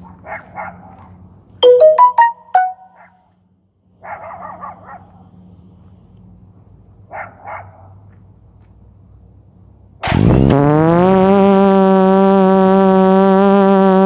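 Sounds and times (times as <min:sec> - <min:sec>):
dog barking: 0:00.0 - 0:01.2, 0:02.9 - 0:03.3, 0:04.0 - 0:05.2, 0:07.1 - 0:08.0
electronic beeps: 0:01.6 - 0:02.9.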